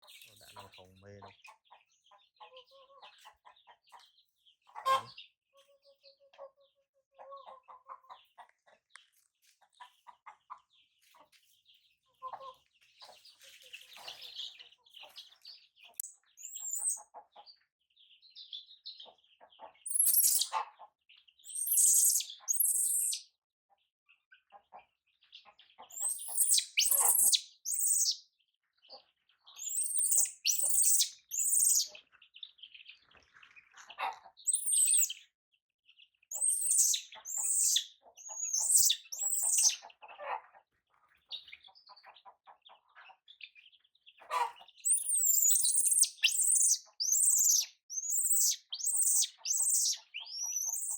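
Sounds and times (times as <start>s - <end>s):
chickens clucking: 0.0s - 17.6s, 19.0s - 21.0s, 33.1s - 35.1s, 36.4s - 43.2s, 44.2s - 50.9s
high-pitched shrill calls: 19.9s - 20.5s, 21.6s - 23.2s, 26.0s - 28.2s, 29.6s - 31.9s, 34.5s - 35.2s, 36.4s - 39.8s, 44.9s - 50.9s.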